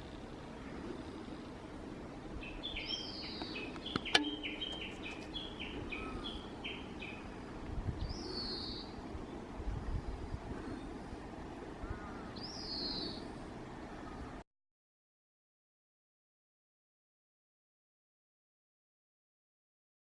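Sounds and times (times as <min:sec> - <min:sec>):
songbird chirping: 0:02.2 - 0:09.6, 0:10.4 - 0:14.4
sharp knock: 0:04.1 - 0:04.5.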